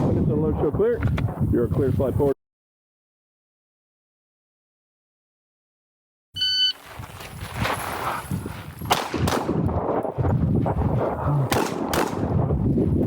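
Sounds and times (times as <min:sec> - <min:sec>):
shot timer beep: 0:06.4 - 0:06.8
footsteps: 0:06.7 - 0:08.9
pistol shots: 0:08.9 - 0:09.8, 0:11.5 - 0:12.4.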